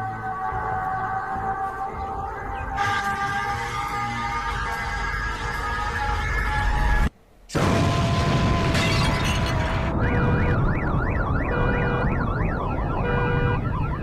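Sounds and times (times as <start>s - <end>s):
explosion blast with shattering: 7.5s - 10.6s
siren yelping: 8.6s - 14.0s.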